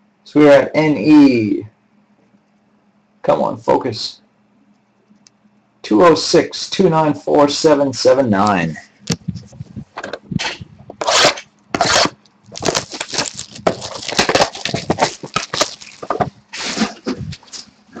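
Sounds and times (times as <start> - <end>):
plastic wrap and cardboard crinkling: 11.0 - 17.7.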